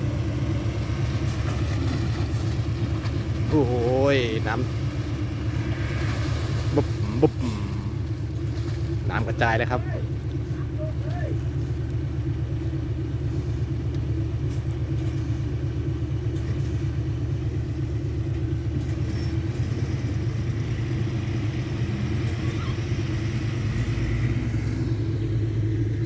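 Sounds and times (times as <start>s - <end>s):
heavy diesel engine running: 0.0s - 26.0s.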